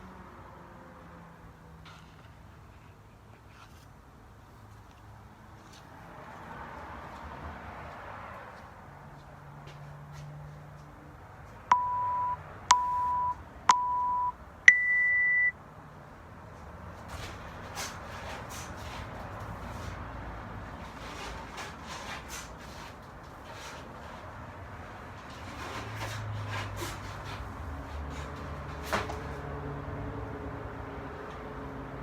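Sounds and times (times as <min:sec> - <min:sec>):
long higher beep: 0:11.7 - 0:15.5
short timer beeps: 0:11.7 - 0:15.5.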